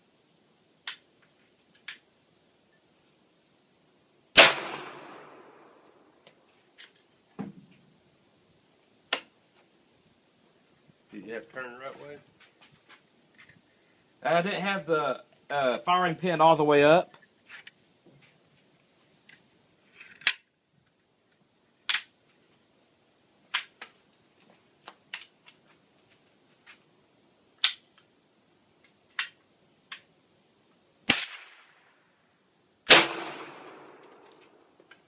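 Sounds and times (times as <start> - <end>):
gunshots with echo: 32.9 - 34.0.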